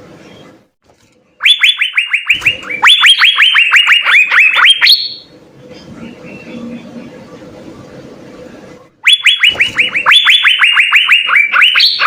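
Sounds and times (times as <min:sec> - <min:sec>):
bird whistling song: 0:09.1 - 0:12.0.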